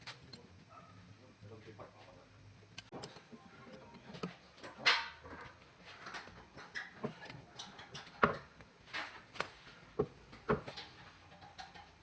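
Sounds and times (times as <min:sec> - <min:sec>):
tools and metal parts clicking: 0:04.2 - 0:09.2, 0:10.6 - 0:12.0.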